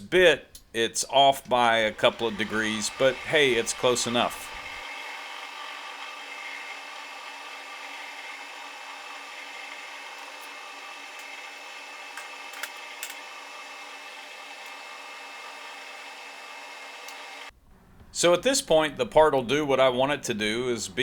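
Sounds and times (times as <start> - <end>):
metal lathe humming: 1.4 - 17.5
tool bit cutting metal: 1.5 - 17.4.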